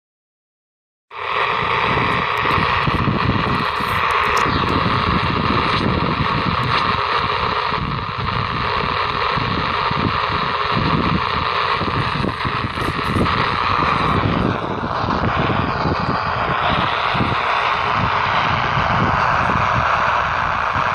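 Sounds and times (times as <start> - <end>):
walkie-talkie radio static: 1.1 - 20.9.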